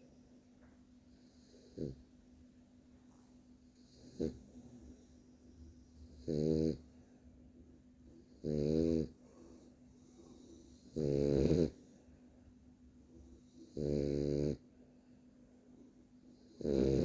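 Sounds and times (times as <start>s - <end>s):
dog snoring: 1.2s - 2.0s, 3.8s - 4.7s, 6.0s - 6.9s, 8.3s - 9.2s, 10.4s - 11.9s, 13.4s - 14.7s, 16.4s - 17.0s.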